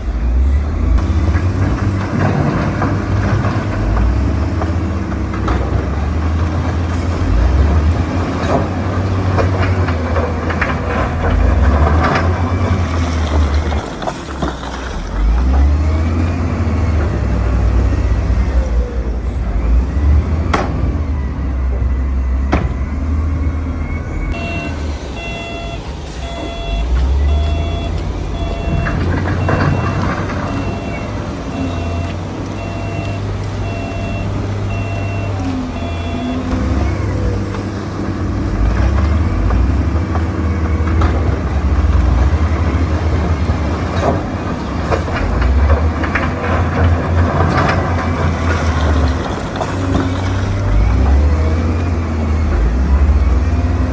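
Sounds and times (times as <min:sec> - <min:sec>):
bulldozer diesel engine droning: 0:00.0 - 0:53.9
reversing alarm beeping: 0:21.1 - 0:37.0.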